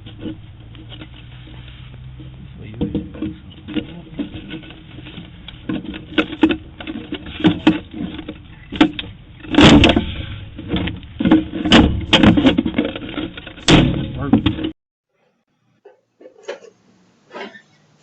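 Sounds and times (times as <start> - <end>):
heavy bangs: 0.0 - 14.8
knocks and thumps: 0.0 - 14.8.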